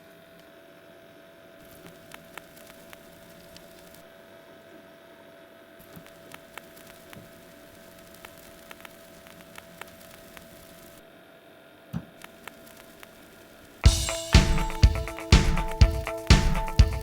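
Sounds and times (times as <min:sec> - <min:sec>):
vinyl clicks and crackles: 0:01.6 - 0:04.0, 0:05.8 - 0:11.0, 0:12.1 - 0:13.9
vinyl surface hiss: 0:01.6 - 0:04.1, 0:05.8 - 0:11.0, 0:12.2 - 0:17.0.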